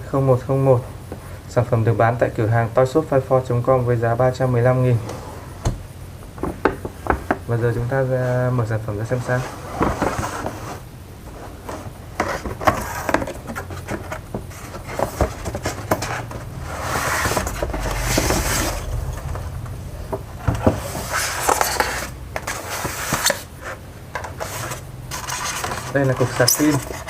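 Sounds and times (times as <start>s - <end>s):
packaging scraping and rustling: 9.2s - 19.3s, 20.4s - 27.0s.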